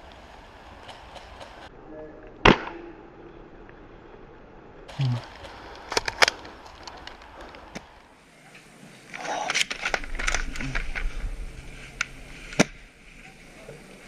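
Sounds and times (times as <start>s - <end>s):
airsoft rifle crack: 12.0s - 12.8s.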